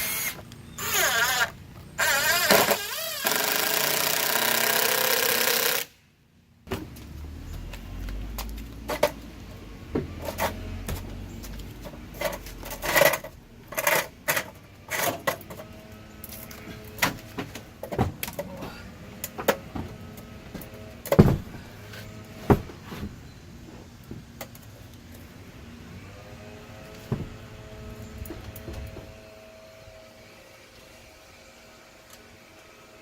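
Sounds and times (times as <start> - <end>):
knocks and clatters of wood and tools: 6.7 - 23.2, 26.8 - 27.5, 28.1 - 29.2.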